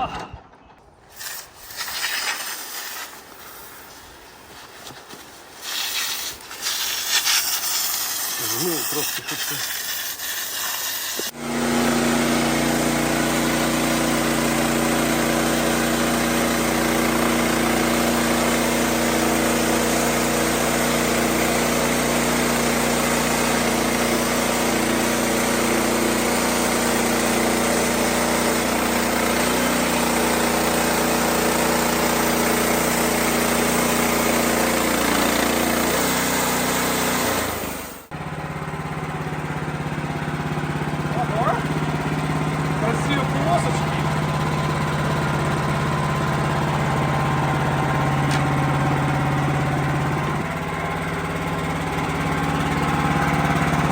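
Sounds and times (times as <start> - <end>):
even hiss: 1.0 - 11.3
engine running steadily: 11.2 - 53.9.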